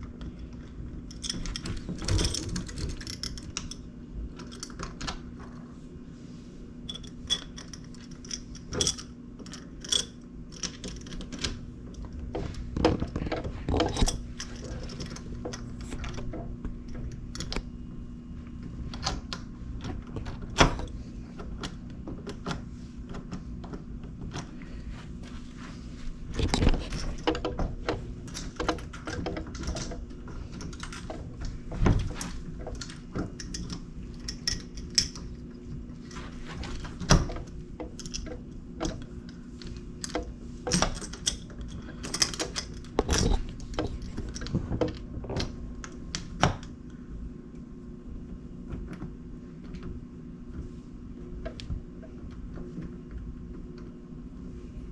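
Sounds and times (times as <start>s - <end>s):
metal hardware clicks and rattles: 1.1s - 3.8s
steady low hum: 1.5s - 4.5s
metal thunks: 1.9s - 3.5s.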